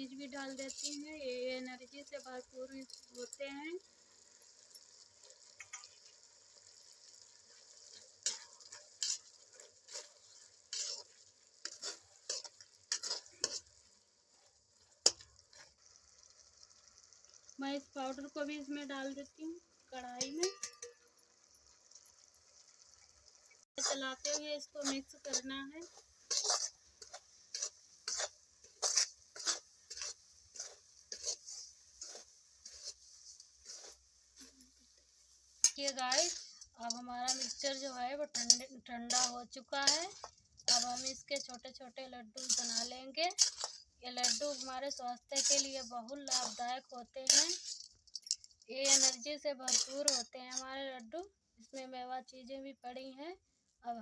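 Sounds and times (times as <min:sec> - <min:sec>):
spoon scraping a pan: 0:00.0 - 0:19.3, 0:20.1 - 0:50.8
sizzling hiss: 0:00.0 - 0:52.6.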